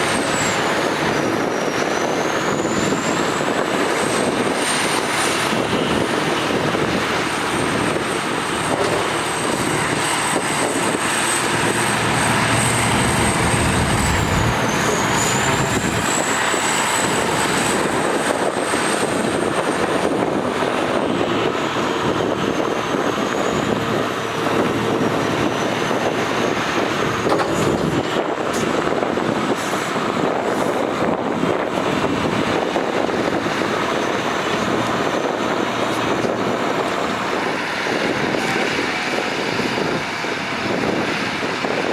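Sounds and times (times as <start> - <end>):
high whine: 0.0 - 19.5
diesel engines of heavy machinery: 0.0 - 41.9.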